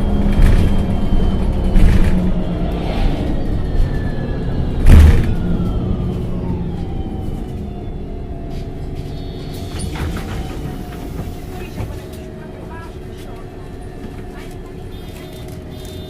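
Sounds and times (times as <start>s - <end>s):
bus engine rumble with whine: 0.0s - 16.0s
loud thump: 4.8s - 5.4s.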